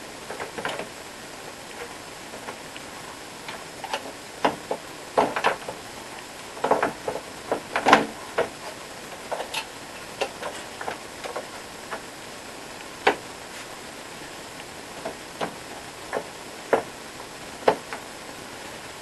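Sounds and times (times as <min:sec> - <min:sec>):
plastic parts clicking and knocking: 0:03.5 - 0:05.8, 0:06.6 - 0:12.0.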